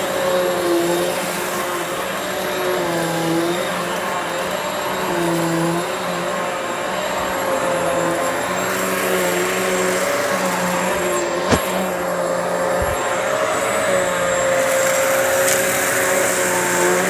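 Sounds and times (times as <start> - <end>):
vacuum cleaner running: 0.0 - 17.0.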